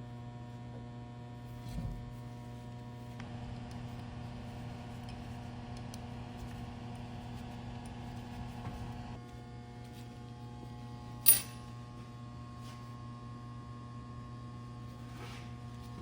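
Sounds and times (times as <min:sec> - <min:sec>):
steady electrical hum: 0:00.0 - 0:16.0
metallic clink of tool: 0:11.2 - 0:11.8.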